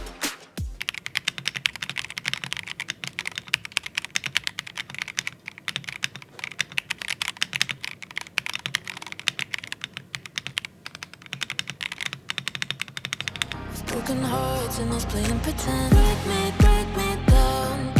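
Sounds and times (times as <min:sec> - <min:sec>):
fast typing on mechanical keyboard: 0:00.8 - 0:13.5.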